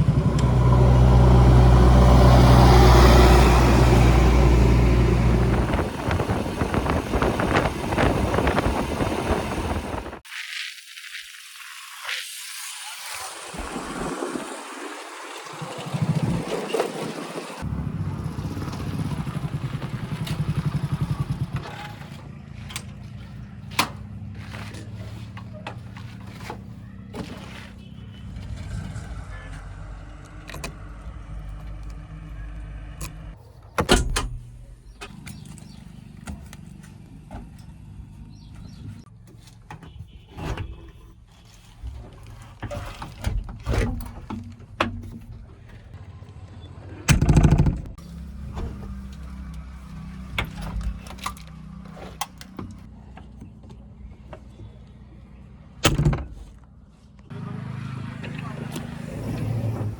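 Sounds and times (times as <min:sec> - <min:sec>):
diesel engine running: 0:00.0 - 0:10.2, 0:17.6 - 0:33.4, 0:45.6 - 0:55.6, 0:56.6 - 0:59.9
metallic knocks and clanks: 0:47.1 - 0:48.0.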